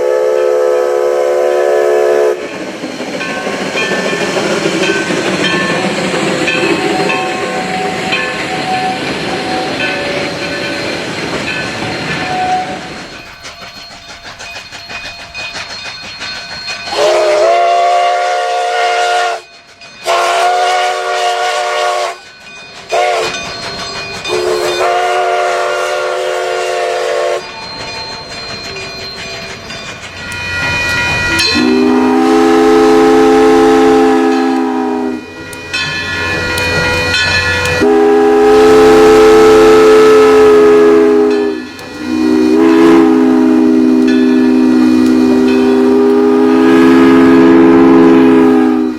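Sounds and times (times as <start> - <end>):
train whistle blasts: 0.0 - 2.5, 6.5 - 10.4, 12.0 - 13.0, 16.9 - 22.3, 22.9 - 23.4, 24.2 - 27.5, 30.3 - 48.9
train rumbling: 0.0 - 48.9.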